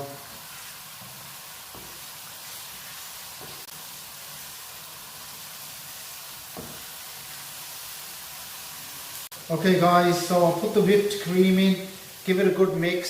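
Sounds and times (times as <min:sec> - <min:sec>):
food sizzling in a pan: 0:00.0 - 0:13.0
spoon knocking pan: 0:01.0 - 0:02.1, 0:06.5 - 0:06.9.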